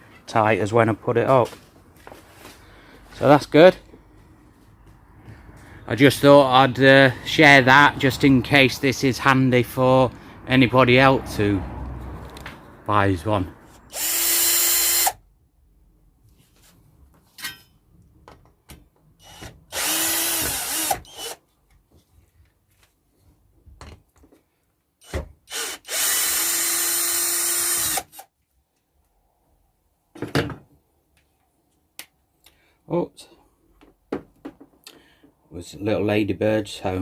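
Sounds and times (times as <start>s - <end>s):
power drill running: 13.9s - 15.2s, 19.2s - 21.4s, 25.5s - 28.2s.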